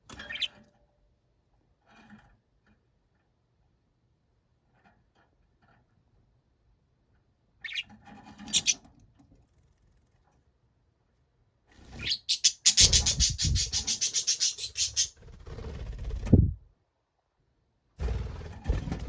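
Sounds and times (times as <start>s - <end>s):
budgerigars chirping: 7.6s - 8.8s, 12.0s - 15.2s
rapid pulsed budgerigar calls: 8.5s - 8.8s, 12.0s - 15.2s.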